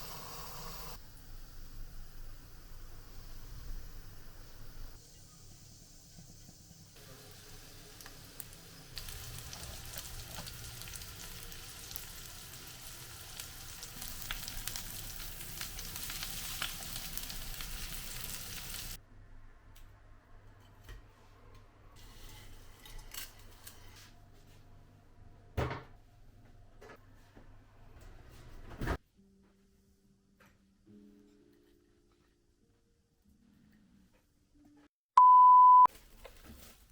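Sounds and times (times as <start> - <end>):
chicken sizzling in hot oil: 0.0 - 19.0.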